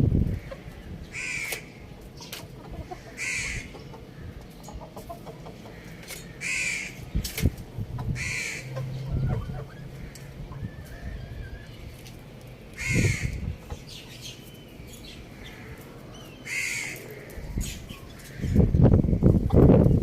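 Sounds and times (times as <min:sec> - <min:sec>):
harsh bird calls: 0:00.1 - 0:20.0.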